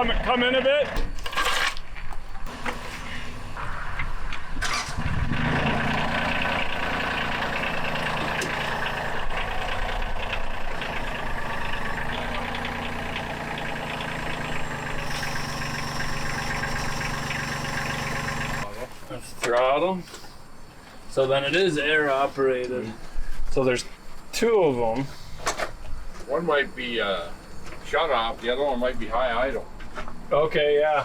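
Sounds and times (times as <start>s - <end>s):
diesel truck engine running: 2.5s - 18.7s.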